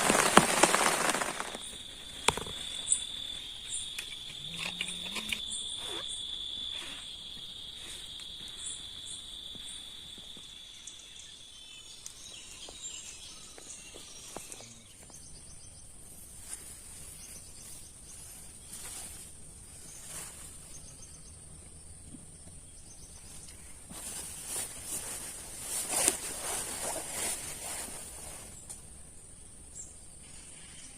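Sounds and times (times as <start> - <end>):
high-pitched insect trill: 0.0 - 15.2
low-pitched insect trill: 0.0 - 22.0.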